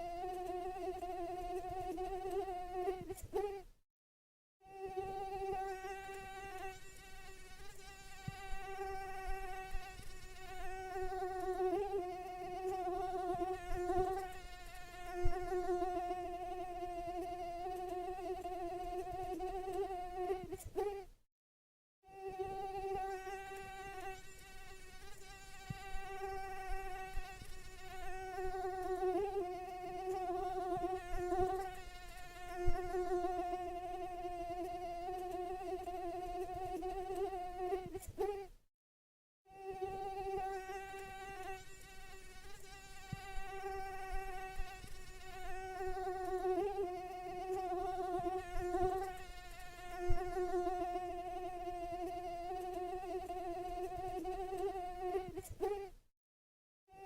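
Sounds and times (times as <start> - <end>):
mosquito whining: 39.5 - 56.0.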